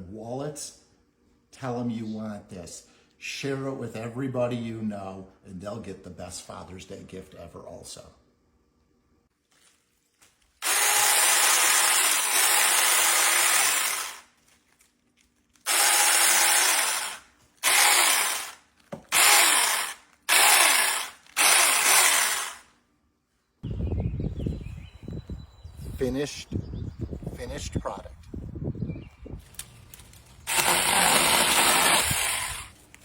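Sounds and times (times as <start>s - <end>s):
electric chainsaw cutting: 10.6s - 14.3s, 15.6s - 22.7s, 30.4s - 32.8s.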